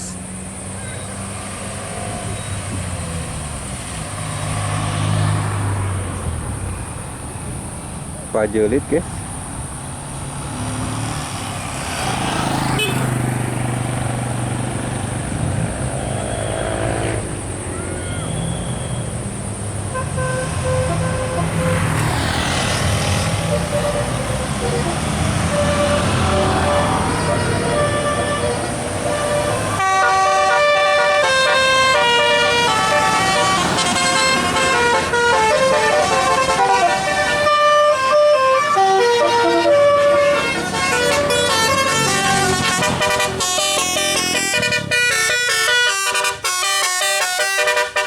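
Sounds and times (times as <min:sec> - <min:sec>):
vehicle engine passing by: 0:00.0 - 0:45.4
musical air horn: 0:19.9 - 0:21.9, 0:23.4 - 0:48.0.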